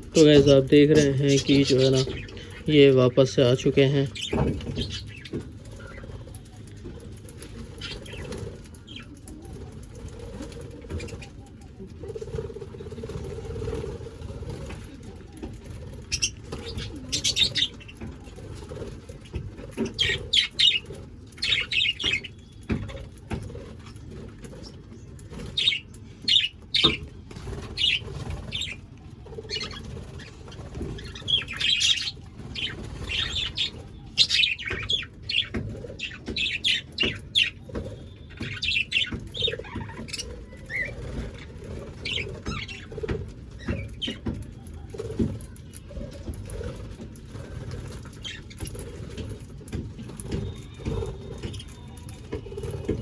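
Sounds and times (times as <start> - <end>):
budgerigars chattering: 0.0 - 9.1, 16.1 - 24.0, 25.4 - 45.2
wingbeats: 0.0 - 53.0.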